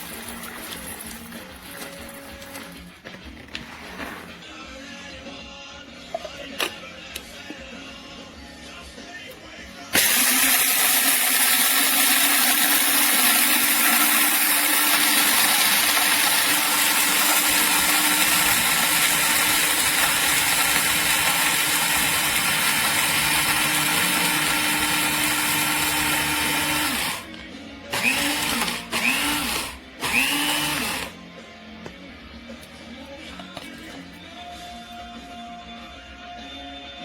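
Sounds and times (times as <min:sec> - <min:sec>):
coffee grinder running: 0:00.0 - 0:02.1, 0:10.0 - 0:27.3, 0:27.9 - 0:31.2.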